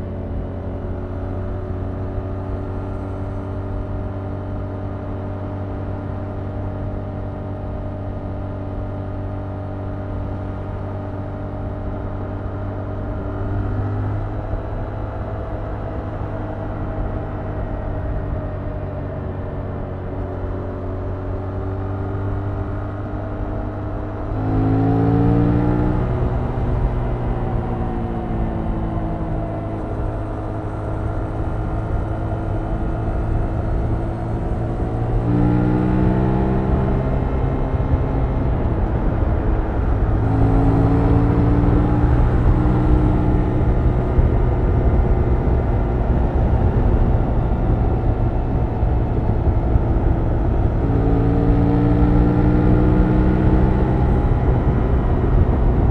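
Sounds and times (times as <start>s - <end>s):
low rumble: 22.4s - 55.9s
motorcycle engine revving: 22.5s - 55.9s.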